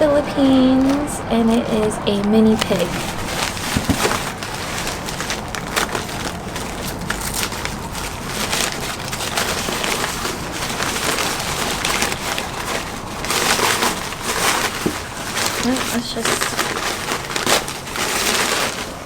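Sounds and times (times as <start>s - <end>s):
paper packaging crinkling: 0.0s - 19.0s.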